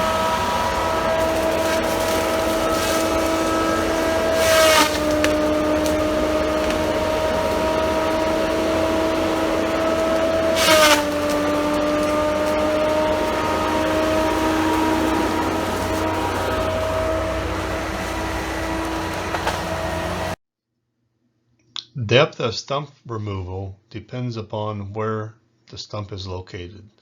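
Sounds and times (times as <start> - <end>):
harsh noise bursts: 0.0 - 20.4
heavy machine engine running: 0.0 - 20.4.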